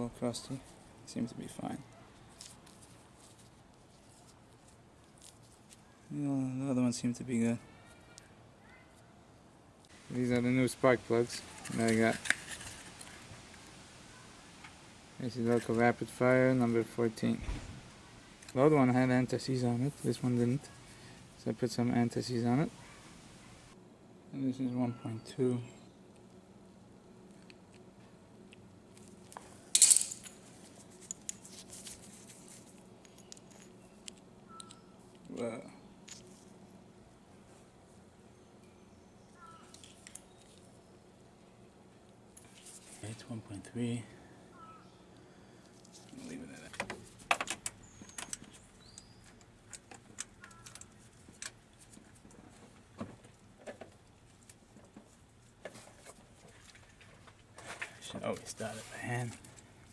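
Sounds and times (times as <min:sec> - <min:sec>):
small metal parts clicking: 0:29.7 - 0:30.4, 0:33.0 - 0:35.3
faint bird chirps: 0:33.8 - 0:35.0, 0:38.3 - 0:40.9, 0:44.4 - 0:45.6, 0:47.8 - 0:49.4, 0:50.4 - 0:50.8
small metal clicks: 0:47.3 - 0:51.6.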